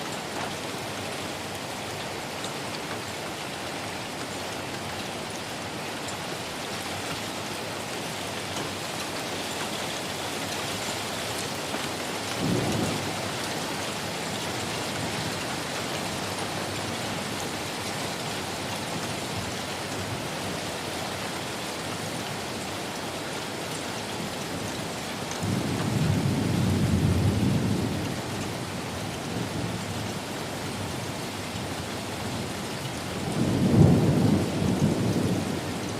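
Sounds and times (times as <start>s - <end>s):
heavy rain: 0.0s - 35.9s.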